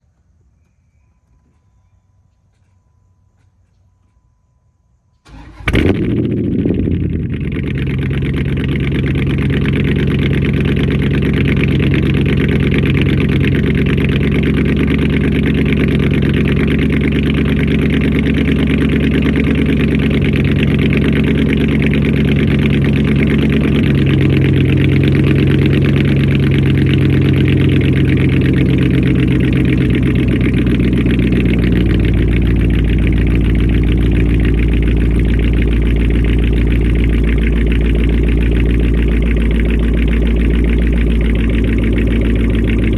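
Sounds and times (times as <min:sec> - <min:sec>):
car engine idling: 0:05.2 - 0:42.9.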